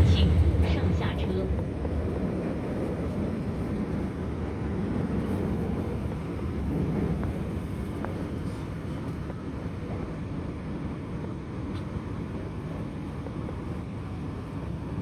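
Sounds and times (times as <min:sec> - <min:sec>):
train wheels rumbling: 0:00.0 - 0:10.1.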